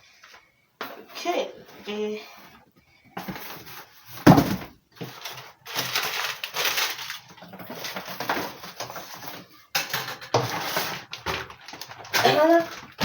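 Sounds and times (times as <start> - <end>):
plastic bag rustling: 3.4 - 9.5, 10.6 - 13.0.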